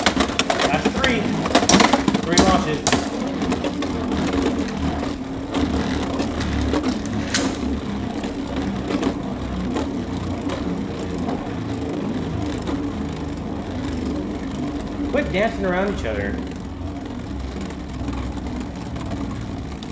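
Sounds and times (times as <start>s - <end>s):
tops knocking stadium rail: 0.0s - 4.9s, 6.2s - 7.9s
spinning tops whirring: 0.0s - 19.9s.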